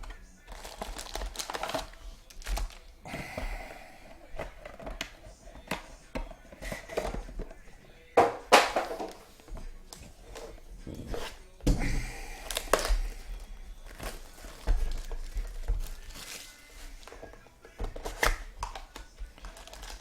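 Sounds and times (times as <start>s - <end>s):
plastic wrapper crinkling and tearing: 0.0s - 3.0s, 12.3s - 20.0s.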